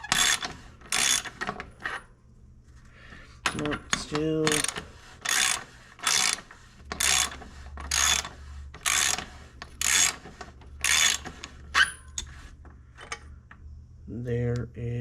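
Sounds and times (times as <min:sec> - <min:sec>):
ratchet wrench clicking: 0:00.0 - 0:01.3, 0:04.0 - 0:06.4, 0:07.0 - 0:10.2, 0:10.8 - 0:11.2.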